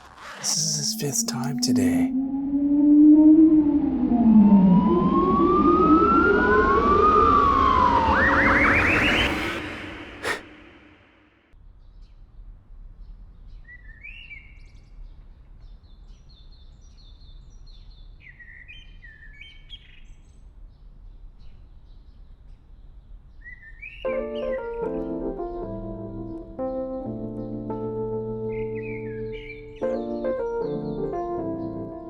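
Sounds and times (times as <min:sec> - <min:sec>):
siren: 0:00.3 - 0:10.3
music: 0:24.1 - 0:32.0.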